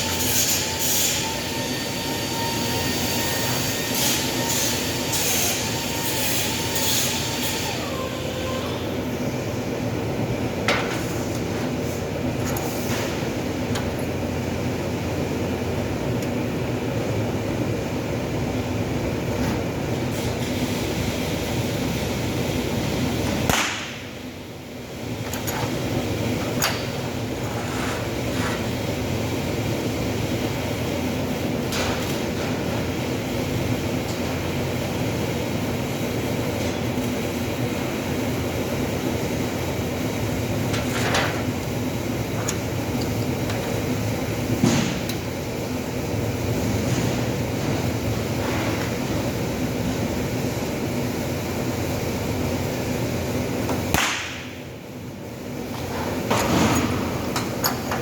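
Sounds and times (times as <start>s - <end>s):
machinery hum with hiss: 0.0s - 58.0s.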